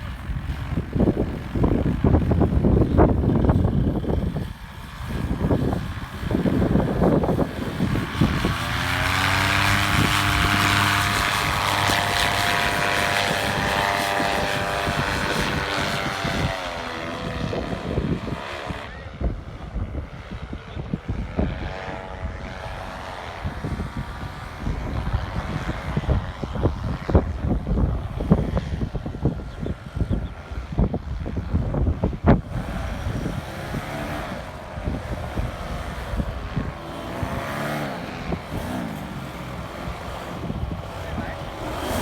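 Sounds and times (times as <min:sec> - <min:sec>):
paramotor engine droning: 0:00.0 - 0:42.0
wind buffeting microphone: 0:00.0 - 0:42.0.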